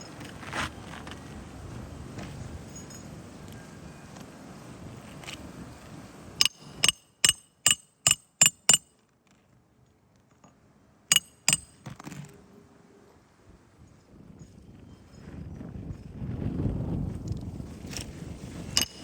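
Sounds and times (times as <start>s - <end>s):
hammer striking nails: 6.4s - 8.8s, 11.1s - 11.8s, 18.8s - 19.0s.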